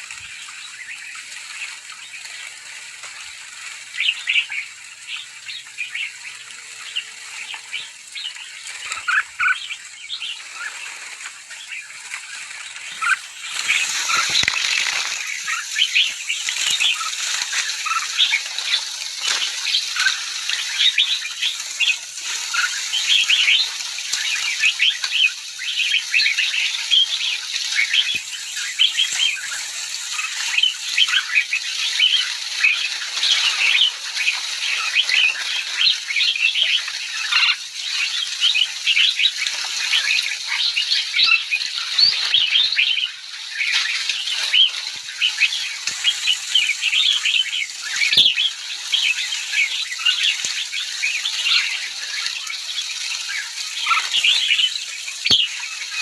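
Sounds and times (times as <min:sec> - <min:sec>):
flock of bulbuls chattering: 0:00.0 - 0:56.0
wings fluttering: 0:10.2 - 0:24.5.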